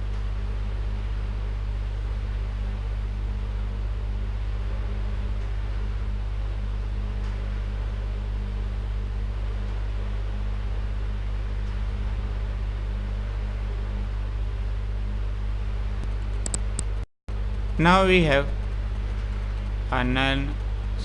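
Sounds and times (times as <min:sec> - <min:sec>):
steady electrical hum: 0:00.0 - 0:21.0.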